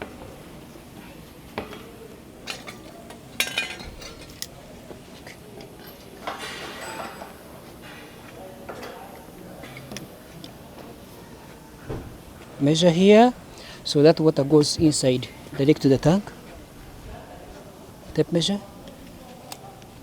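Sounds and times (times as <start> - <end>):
clatter of parts: 2.4 - 4.5
tools clinking and knocking: 2.4 - 4.6.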